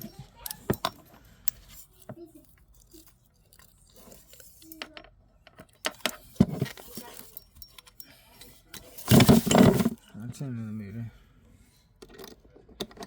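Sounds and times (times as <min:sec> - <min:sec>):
metal rattle: 0:08.8 - 0:10.0.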